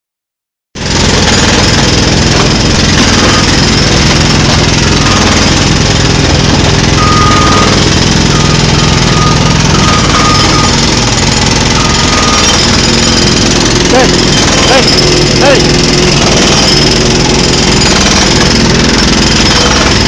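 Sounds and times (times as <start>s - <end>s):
construction machinery engine drone: 0.8s - 20.0s
thin high tone: 13.9s - 17.0s.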